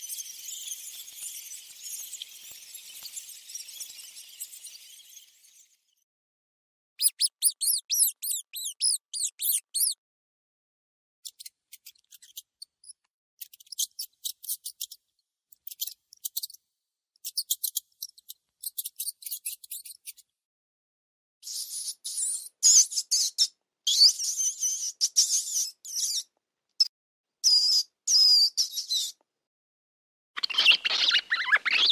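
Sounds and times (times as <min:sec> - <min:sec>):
mouse squeaking: 0:00.0 - 0:05.4, 0:07.0 - 0:10.0, 0:11.2 - 0:15.0, 0:15.6 - 0:16.6, 0:17.2 - 0:20.2, 0:21.4 - 0:29.2, 0:30.4 - 0:31.9.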